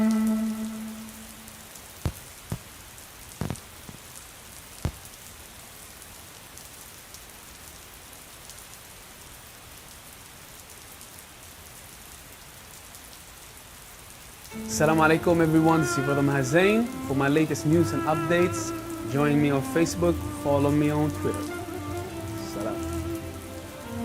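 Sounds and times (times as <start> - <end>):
steady rain hiss: 0.0 - 24.0
sharp drop taps: 2.1 - 2.7, 3.4 - 4.0.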